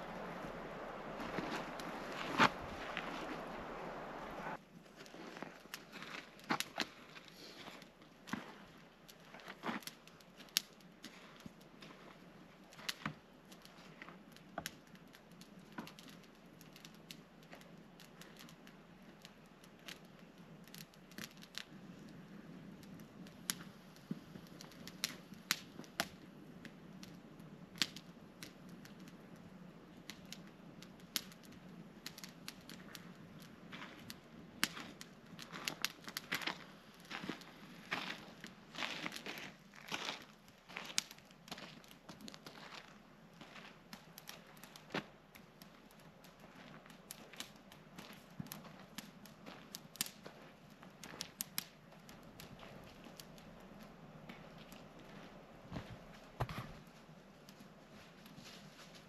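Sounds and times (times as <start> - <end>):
campfire crackling and popping: 0.0 - 4.6, 5.5 - 59.0
faint low hum: 0.0 - 4.6.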